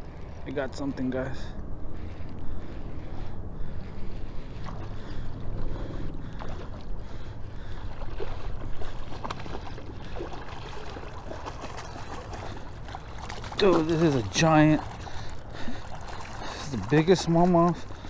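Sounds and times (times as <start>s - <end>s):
splashing water: 4.5s - 18.0s.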